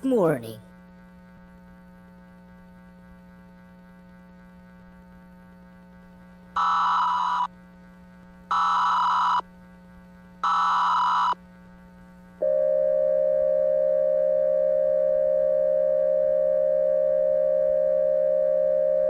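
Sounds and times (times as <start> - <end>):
steady attention tone: 0.0 - 0.6.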